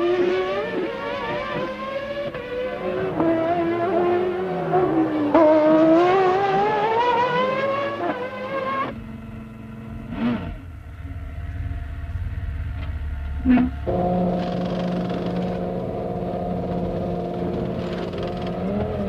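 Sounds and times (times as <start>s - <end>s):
racing car engine at high revs: 0.0s - 19.0s.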